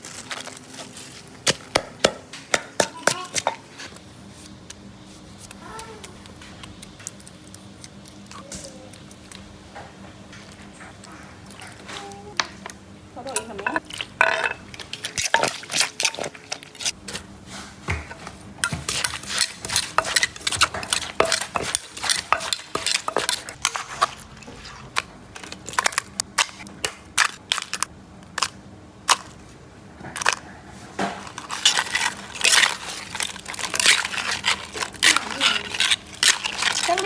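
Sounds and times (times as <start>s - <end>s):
utensils clinking on dishes: 10.4s - 17.0s, 17.9s - 24.1s, 31.0s - 37.0s.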